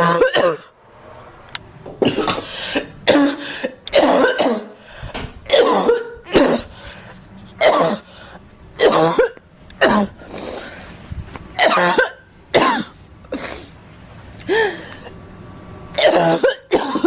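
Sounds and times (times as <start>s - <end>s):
girl coughing: 0.0s - 0.7s, 2.0s - 4.8s, 5.5s - 6.8s, 7.6s - 8.1s, 8.8s - 10.2s, 11.6s - 13.5s, 16.0s - 17.0s.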